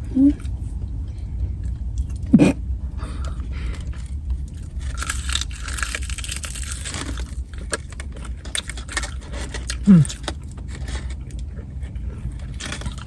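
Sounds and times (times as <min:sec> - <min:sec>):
steady low rumble: 0:00.0 - 0:13.0
crunchy biting: 0:01.7 - 0:13.0
paper wrapper crinkling: 0:04.3 - 0:11.5.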